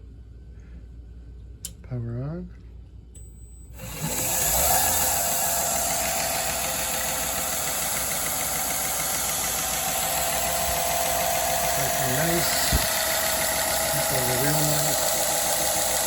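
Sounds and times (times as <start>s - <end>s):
belt grinder running: 3.8s - 16.0s.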